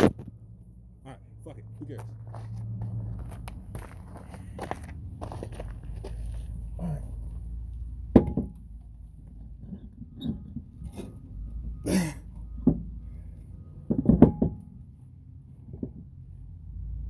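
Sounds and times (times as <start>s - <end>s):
tools and parts knocking: 8.1s - 8.7s, 13.9s - 14.7s.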